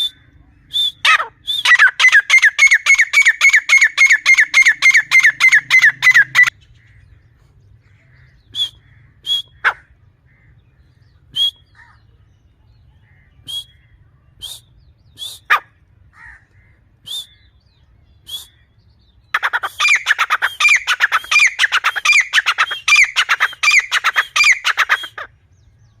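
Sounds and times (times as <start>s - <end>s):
francolin calling: 0.0s - 6.9s, 19.3s - 25.3s.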